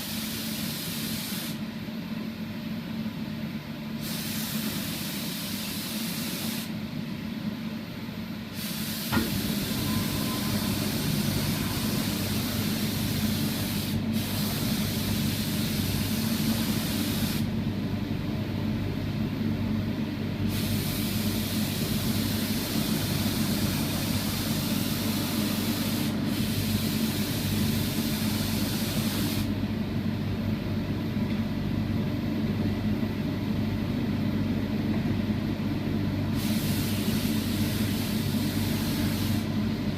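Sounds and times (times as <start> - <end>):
spray gun hissing: 0.0 - 1.6, 4.0 - 6.7, 8.5 - 17.5, 20.5 - 29.6, 36.4 - 39.5
steady machine hum: 6.7 - 39.9.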